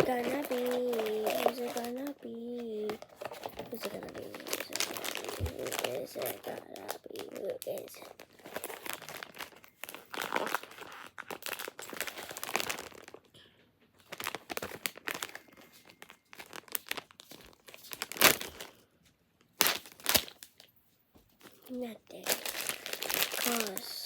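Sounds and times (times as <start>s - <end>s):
sharp crackles: 0.0s - 2.2s, 22.1s - 24.0s
packaging crinkling and tearing: 0.0s - 13.3s, 14.0s - 20.7s, 21.4s - 24.0s.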